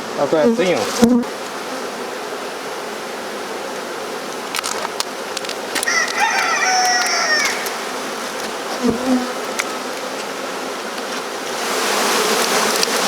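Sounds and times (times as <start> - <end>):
bee swarm buzzing: 0.0 - 13.0
rooster crowing: 5.8 - 7.9.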